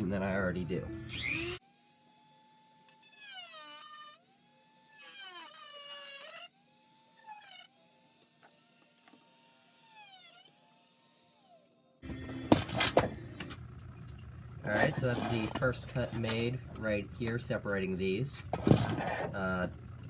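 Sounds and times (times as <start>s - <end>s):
rotary tool cutting plastic: 1.1s - 11.6s, 14.6s - 16.5s, 18.4s - 19.5s.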